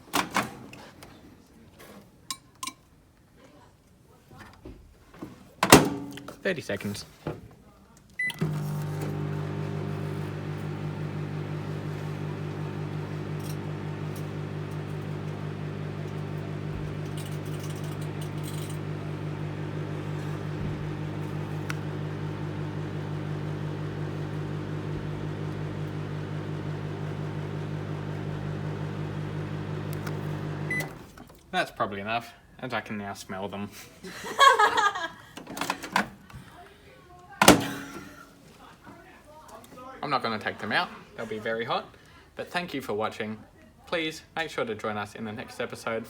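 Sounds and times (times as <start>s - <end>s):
microwave beep: 8.2s - 31.0s
microwave humming: 8.2s - 31.1s.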